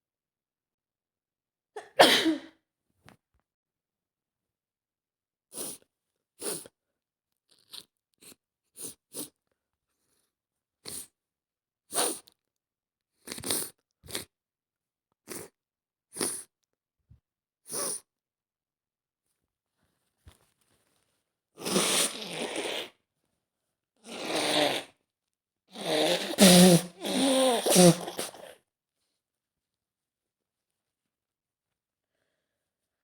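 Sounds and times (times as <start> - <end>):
woman sniffling: 25.8 - 28.5.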